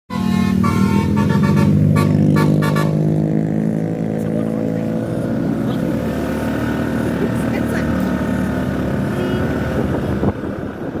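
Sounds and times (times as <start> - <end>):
bus horn playing a tune: 0.1 - 3.3, 9.0 - 9.8
bus engine running: 0.1 - 11.0.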